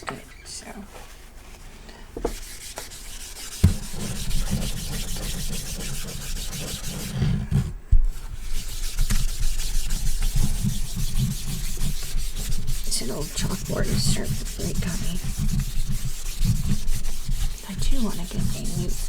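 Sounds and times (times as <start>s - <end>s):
tissue rubbing chalkboard: 0.1s - 19.0s
knock on chalkboard: 3.6s - 5.4s.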